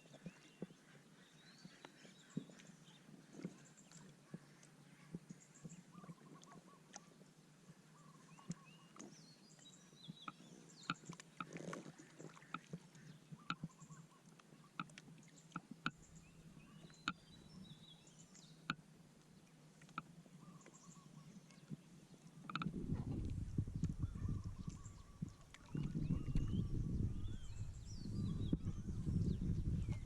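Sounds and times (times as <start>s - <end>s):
low steady hum: 22.5s - 30.0s.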